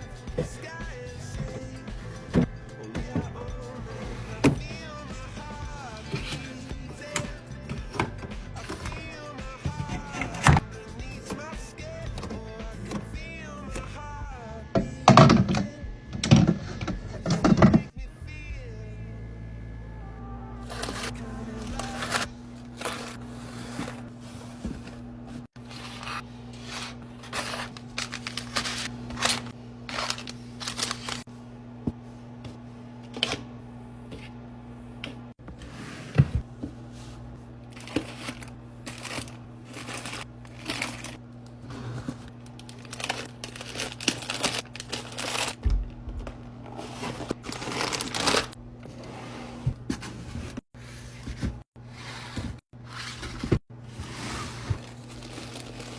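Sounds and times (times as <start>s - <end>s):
steady low hum: 0.0s - 55.9s
plastic packaging crinkling: 25.6s - 31.3s, 37.8s - 41.2s, 42.3s - 45.7s, 47.0s - 48.6s, 54.8s - 55.9s.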